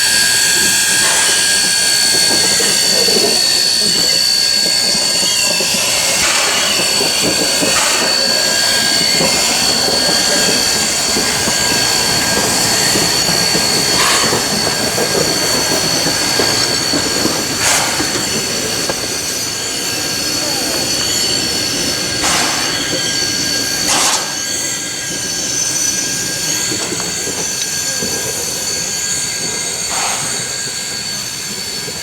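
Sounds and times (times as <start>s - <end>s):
steam hissing: 0.0s - 32.0s
train rumbling: 0.0s - 32.0s
sharp metal clanks: 5.5s - 11.8s, 22.2s - 23.0s, 23.8s - 24.4s, 29.9s - 30.6s.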